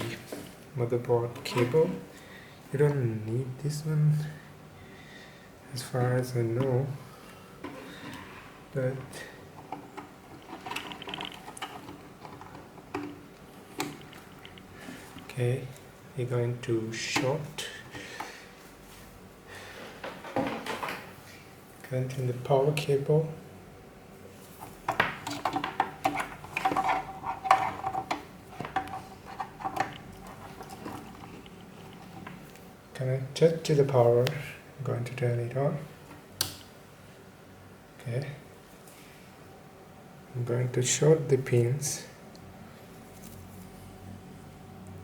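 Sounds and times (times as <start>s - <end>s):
power cable clicking and rattling: 9.6s - 15.3s, 24.9s - 32.6s
short rattle: 10.3s - 15.2s.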